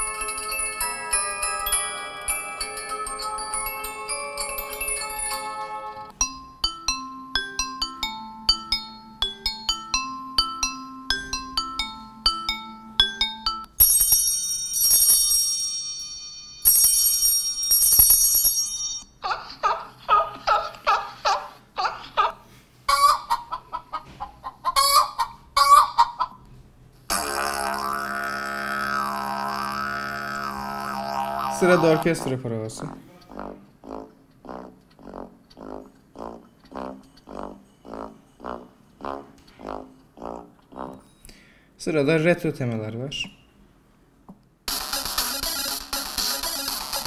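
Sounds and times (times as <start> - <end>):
bright high repeated chimes: 0.0 - 19.1
plinking mallet-like melody: 0.0 - 19.1.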